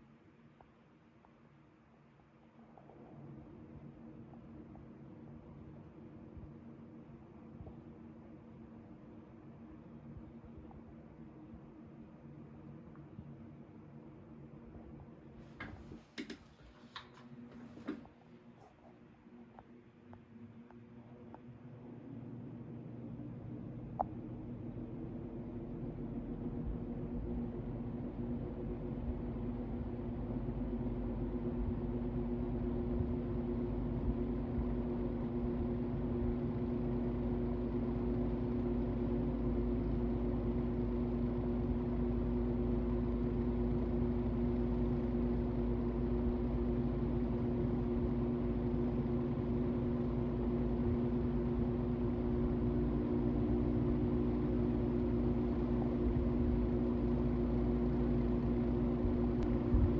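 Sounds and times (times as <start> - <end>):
box fan running: 20.3 - 59.9.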